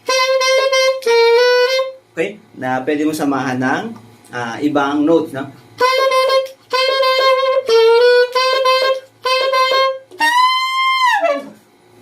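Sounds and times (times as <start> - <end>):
saxophone held notes: 0.0 - 2.0, 5.8 - 11.6.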